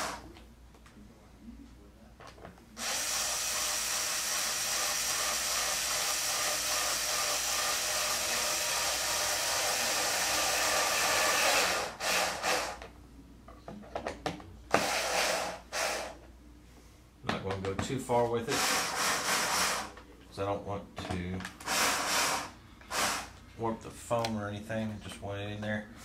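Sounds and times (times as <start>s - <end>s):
electric drill driving screws: 0.0s - 0.2s, 2.8s - 12.8s, 14.7s - 16.2s, 18.5s - 20.0s, 21.6s - 23.3s.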